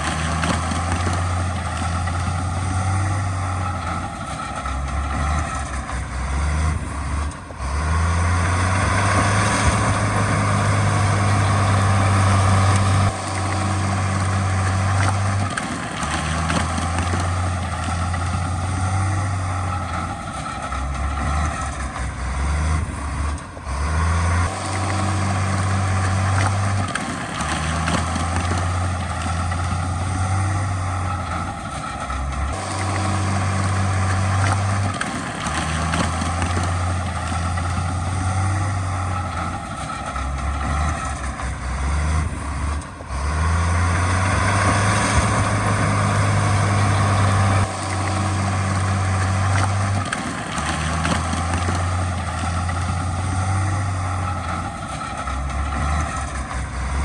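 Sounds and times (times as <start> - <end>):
heavy diesel engine droning: 0.0 - 57.0.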